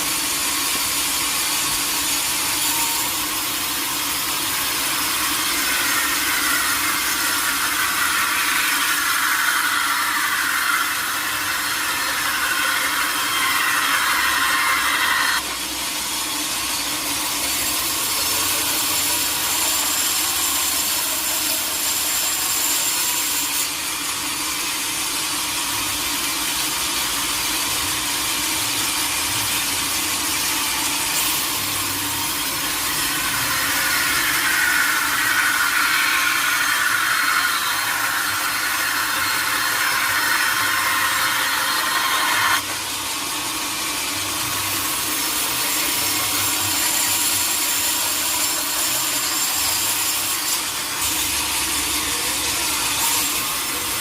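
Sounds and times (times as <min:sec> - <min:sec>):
saw cutting through log: 0:00.0 - 0:54.0.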